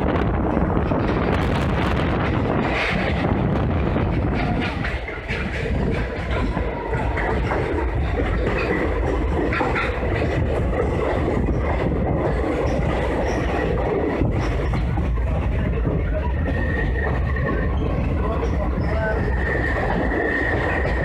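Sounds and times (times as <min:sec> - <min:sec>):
train wheels rumbling on rails: 0:00.0 - 0:21.0
high wheel squeal: 0:16.4 - 0:21.0.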